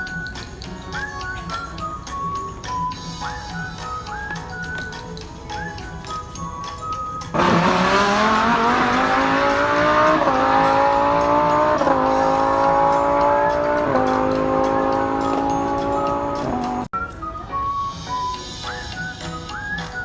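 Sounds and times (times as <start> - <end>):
background music: 0.0 - 20.0
race car engine accelerating: 7.3 - 16.9.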